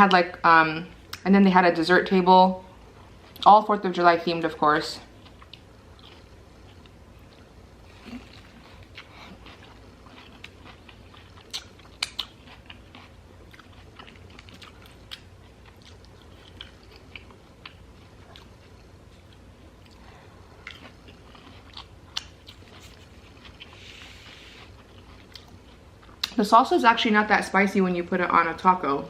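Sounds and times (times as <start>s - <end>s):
person chewing food: 5.1s - 26.4s
sharp crunchy snaps: 5.3s - 18.5s, 20.6s - 23.8s.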